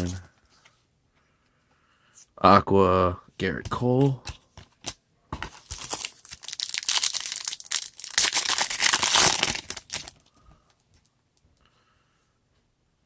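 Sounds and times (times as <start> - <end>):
card pack wrapper crinkling: 4.8 - 10.3.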